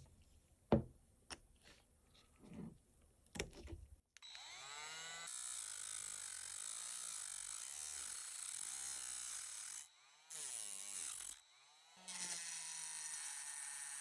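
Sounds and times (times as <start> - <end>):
small power tool whirring: 4.2 - 14.0.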